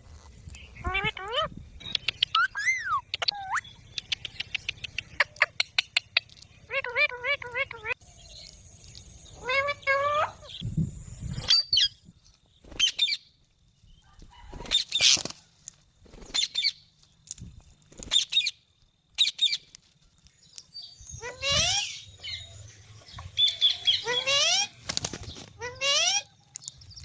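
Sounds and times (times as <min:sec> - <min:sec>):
parrot squawking: 0:00.8 - 0:01.5, 0:02.3 - 0:03.7, 0:06.7 - 0:08.0, 0:09.4 - 0:10.6, 0:23.5 - 0:24.7.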